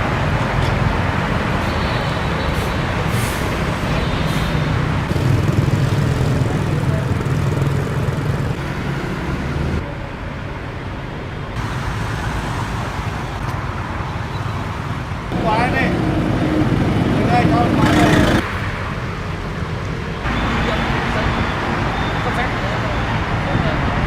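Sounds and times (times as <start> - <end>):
heavy truck engines running: 0.0 - 9.9, 11.6 - 18.5
road traffic noise: 0.0 - 24.0.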